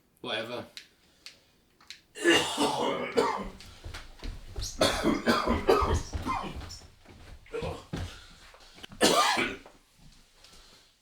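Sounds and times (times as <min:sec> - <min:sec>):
man coughing: 0:02.2 - 0:03.6, 0:04.6 - 0:06.8, 0:09.0 - 0:09.7.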